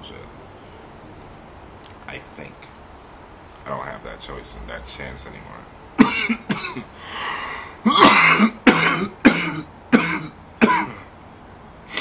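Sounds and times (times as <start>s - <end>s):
man coughing: 6.0s - 7.0s, 7.8s - 11.1s.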